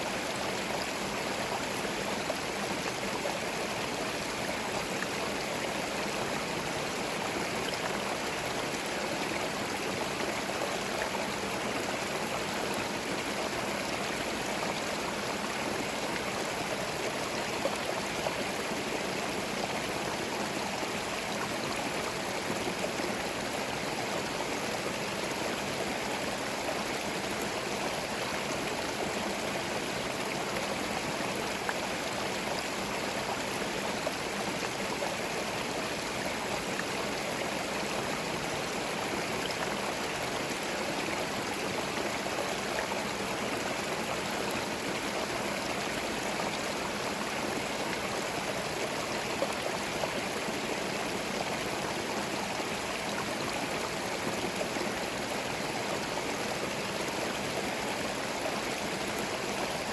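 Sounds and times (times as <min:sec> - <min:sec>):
stream gurgling over stones: 0:00.0 - 0:59.9.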